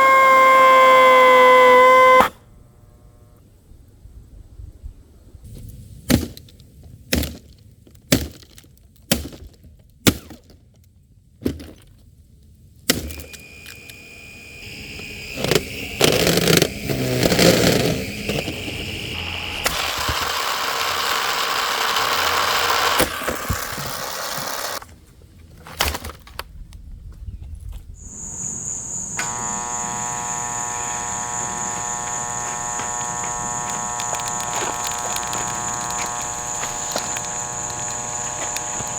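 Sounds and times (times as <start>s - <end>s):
sharp blows on vacuum cleaner: 0.0s - 2.4s, 14.6s - 24.8s, 28.0s - 38.9s
electric motor whining: 0.0s - 3.4s, 13.3s - 24.8s, 28.0s - 38.9s
crashing and grinding: 29.2s - 38.9s.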